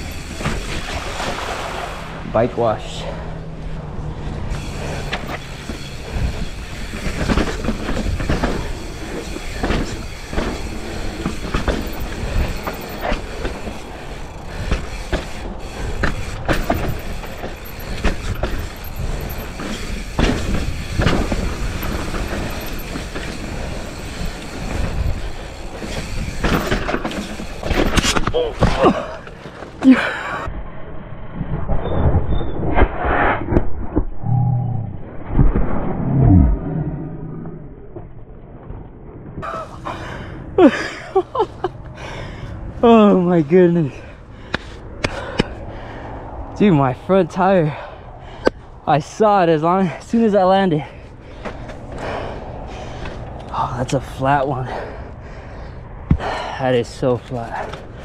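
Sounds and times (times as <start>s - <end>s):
bike frame and chain rattling: 0.0s - 1.2s, 3.2s - 30.4s
bike tyres rumbling over dirt: 0.0s - 30.0s.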